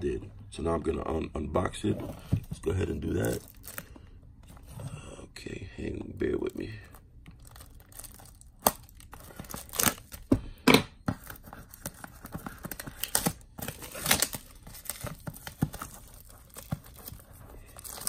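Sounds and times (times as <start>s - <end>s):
packaging tearing and crinkling: 3.1s - 3.9s, 6.5s - 10.3s, 11.2s - 18.0s.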